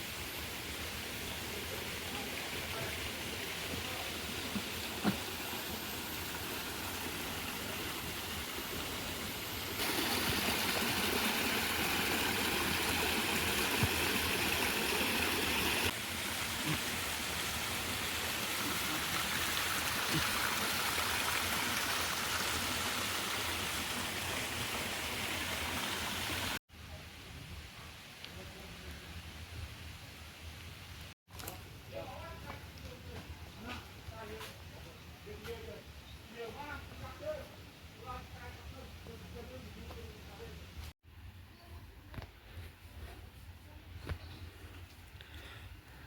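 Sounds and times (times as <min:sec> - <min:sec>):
rush of running water: 0:00.4 - 0:26.6.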